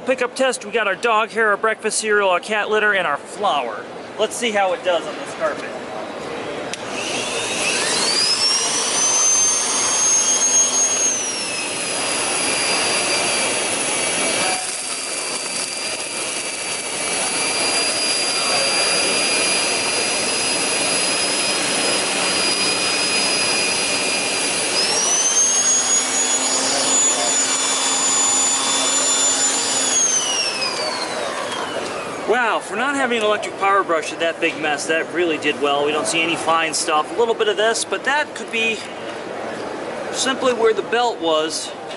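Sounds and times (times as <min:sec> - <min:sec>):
vacuum cleaner motor whine: 0:06.8 - 0:32.4.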